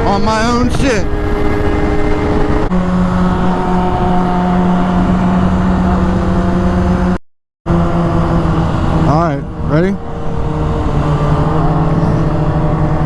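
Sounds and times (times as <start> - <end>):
wind rush: 0.0 - 6.9
motorcycle engine running: 0.0 - 13.0.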